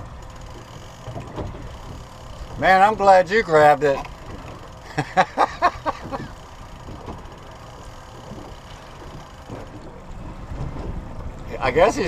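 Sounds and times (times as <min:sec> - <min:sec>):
man speaking: 0:11.5 - 0:12.0.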